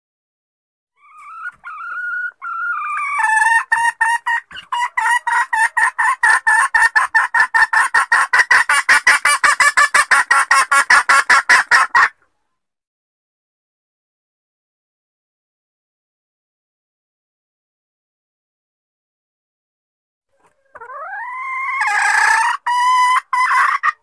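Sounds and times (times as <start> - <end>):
junglefowl hen cackling: 1.0 - 12.4, 20.3 - 24.0.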